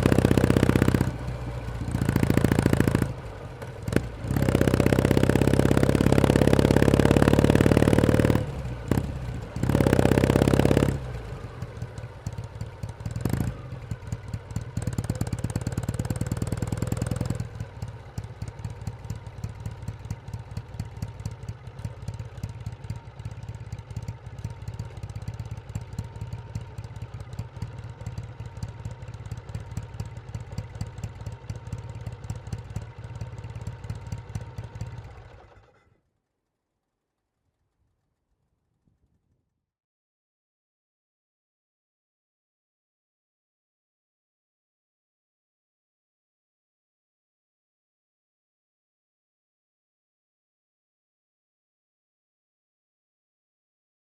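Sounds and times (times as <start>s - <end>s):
motorcycle engine running: 0.0s - 35.9s.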